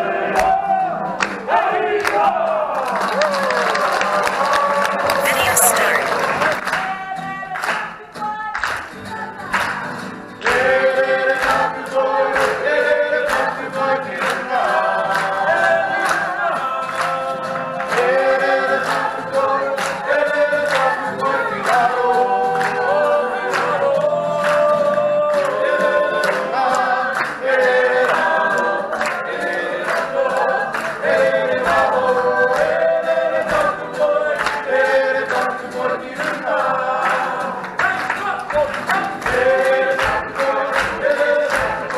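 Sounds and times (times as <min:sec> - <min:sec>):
voices singing in harmony: 0:10.4 - 0:37.6, 0:39.2 - 0:41.9.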